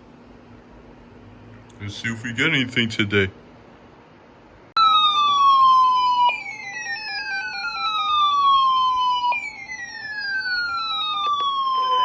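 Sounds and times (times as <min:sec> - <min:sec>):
siren-like gliding alarm tone: 0:04.8 - 0:12.0
stepped warbling alarm tone: 0:04.8 - 0:12.0.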